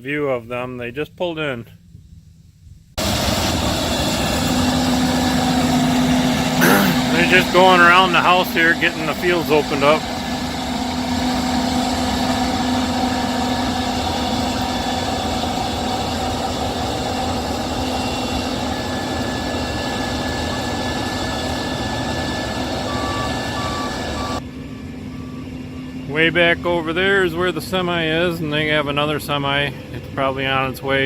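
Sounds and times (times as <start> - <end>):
combine harvester running: 3.0 - 30.0
backup alarm beeps: 21.7 - 24.4.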